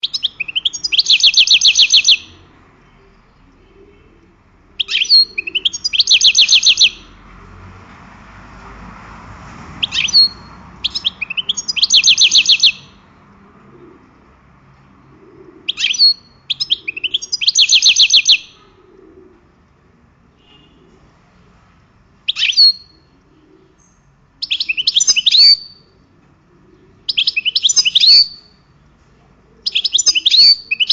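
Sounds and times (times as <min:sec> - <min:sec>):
songbird singing trill: 0:00.0 - 0:07.2, 0:09.8 - 0:13.4, 0:15.1 - 0:18.8, 0:22.3 - 0:26.0, 0:26.8 - 0:28.8, 0:29.6 - 0:30.9.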